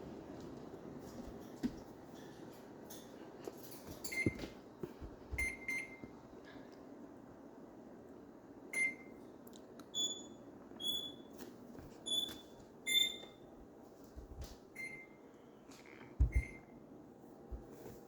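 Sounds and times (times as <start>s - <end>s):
microwave oven beeps: 4.1s - 4.6s, 5.4s - 6.2s, 8.7s - 9.3s, 9.9s - 11.4s, 12.0s - 13.5s, 14.7s - 15.3s, 16.2s - 16.8s.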